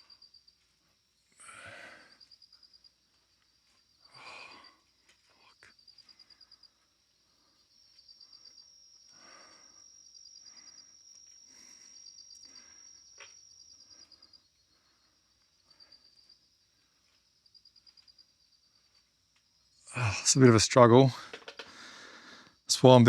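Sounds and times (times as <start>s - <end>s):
crickets chirping: 0.0s - 23.0s
high insect whine: 0.0s - 23.0s
soft breath-like sounds: 1.3s - 2.4s, 4.0s - 13.1s, 21.6s - 22.6s.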